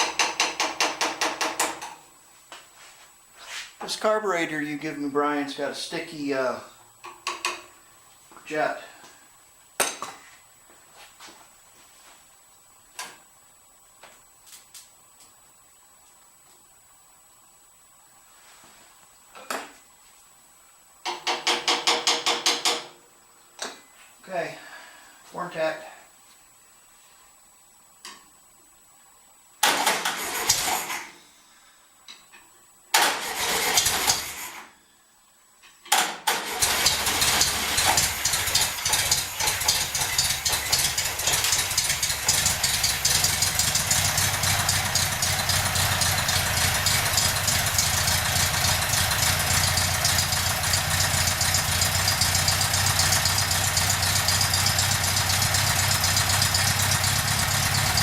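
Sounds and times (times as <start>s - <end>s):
car engine starting and idling: 36.3s - 58.0s.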